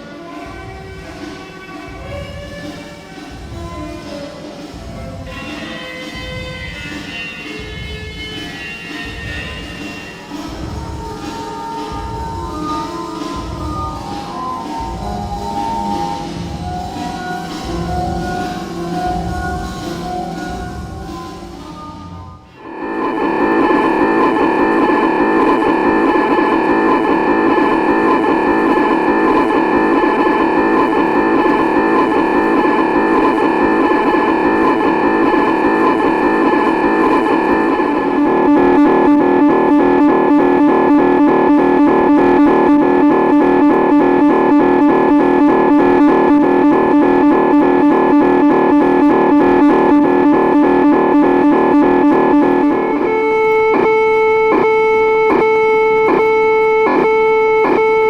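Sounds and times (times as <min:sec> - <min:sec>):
rapid pulsing electronic tones: 0:04.7 - 0:58.0
held electronic tones: 0:22.5 - 0:58.0.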